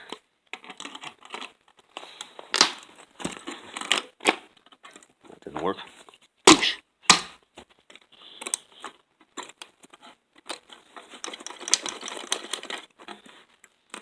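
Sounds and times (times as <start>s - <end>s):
plastic and metal parts clicking: 11.2s - 12.8s.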